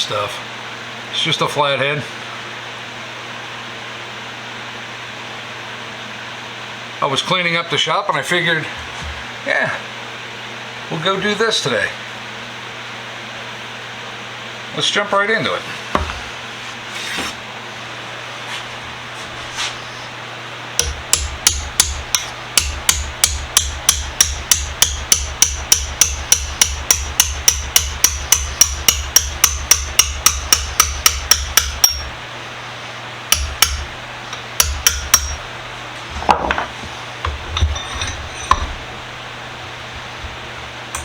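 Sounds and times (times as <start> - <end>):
ringing hammer blows: 20.8 - 32.1, 33.3 - 35.5.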